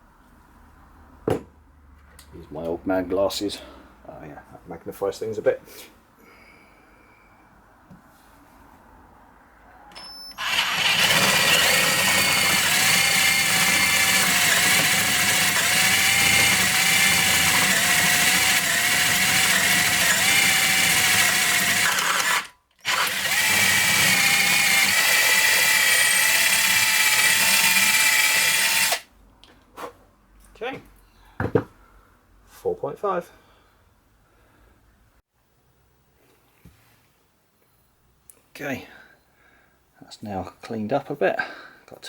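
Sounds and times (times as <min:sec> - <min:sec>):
electric drill whining: 0:10.0 - 0:29.0.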